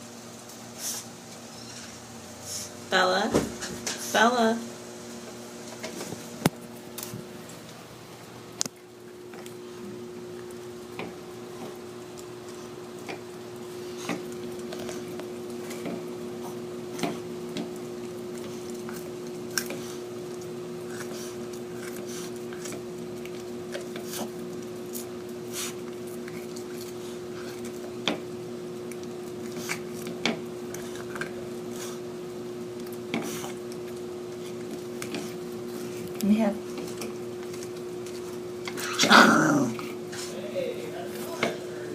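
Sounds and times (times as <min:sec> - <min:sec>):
dog wet chewing: 0:08.7 - 0:40.4
dog teeth cracking on bone: 0:18.0 - 0:28.2.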